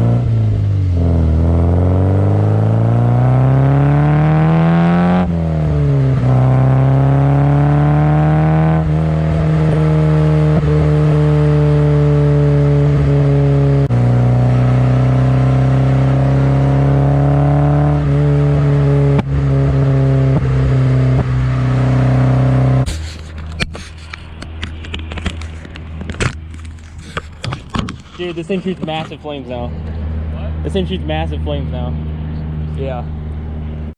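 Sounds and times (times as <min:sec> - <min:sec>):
car engine revving loud: 0:00.0 - 0:22.9.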